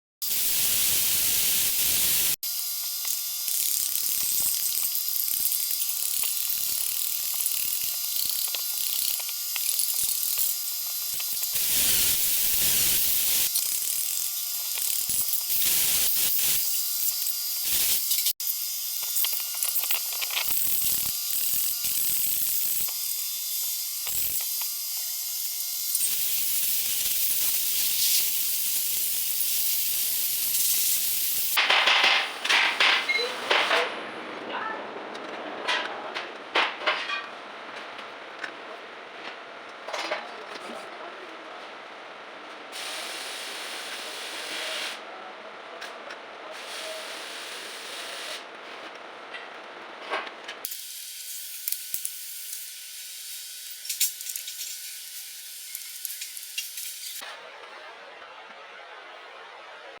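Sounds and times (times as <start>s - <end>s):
metalworking hiss: 0.2s - 2.4s, 6.0s - 18.4s, 19.0s - 31.6s, 50.7s - 57.2s
welding arc crackling: 0.2s - 32.9s, 50.7s - 57.2s
crackling hiss with clicks: 53.7s - 57.2s.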